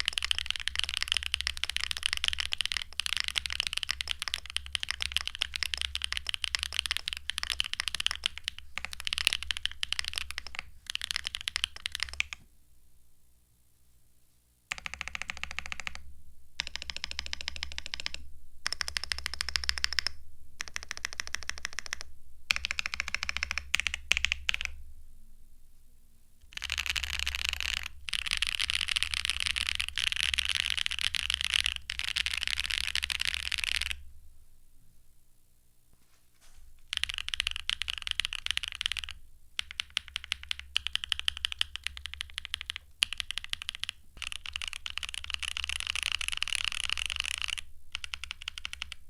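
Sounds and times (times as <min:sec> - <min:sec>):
mechanical keyboard typing: 0:00.0 - 0:12.4, 0:14.7 - 0:16.0, 0:16.6 - 0:24.8, 0:26.5 - 0:34.0, 0:36.8 - 0:49.0.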